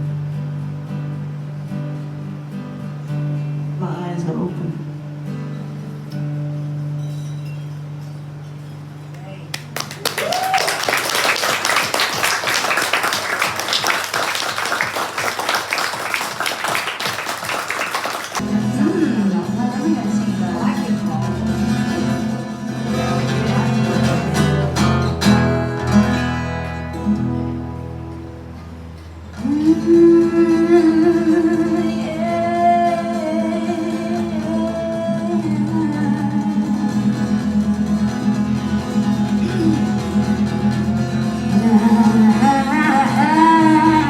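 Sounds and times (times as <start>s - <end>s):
acoustic guitar strumming: 0.0s - 9.1s, 18.4s - 44.0s
audience applauding: 9.5s - 18.4s.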